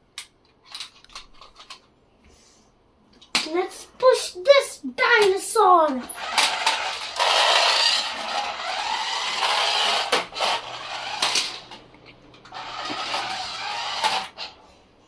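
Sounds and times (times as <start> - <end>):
toy car scraping along floor: 6.0 - 11.8, 12.4 - 14.6.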